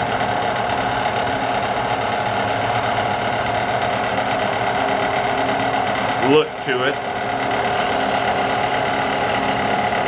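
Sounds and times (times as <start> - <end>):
shavings rubbing on spinning wood: 0.0 - 3.5, 7.6 - 10.0
wood lathe motor whine: 0.0 - 6.4, 7.1 - 10.0.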